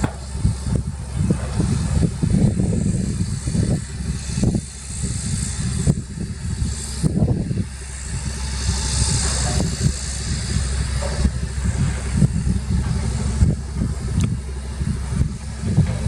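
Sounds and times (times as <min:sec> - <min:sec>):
metal clanks and knocks: 0:00.0 - 0:02.3, 0:09.2 - 0:16.0
diesel earthmoving machinery running: 0:00.0 - 0:16.0.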